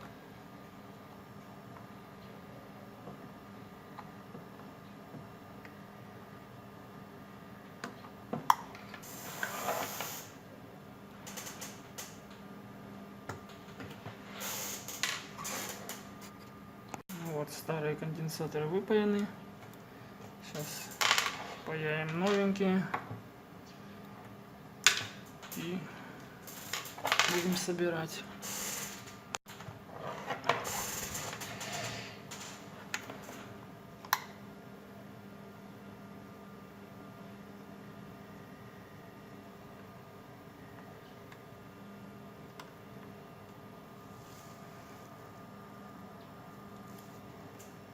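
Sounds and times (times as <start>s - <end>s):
faint steady hum: 0.0s - 47.9s
short hissing: 9.0s - 10.4s, 14.3s - 14.9s, 28.4s - 29.0s.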